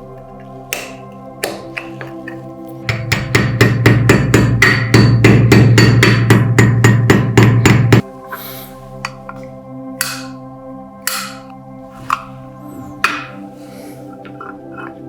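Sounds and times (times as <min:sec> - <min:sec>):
background music: 0:00.0 - 0:15.0
hammer striking rapidly: 0:02.9 - 0:08.0.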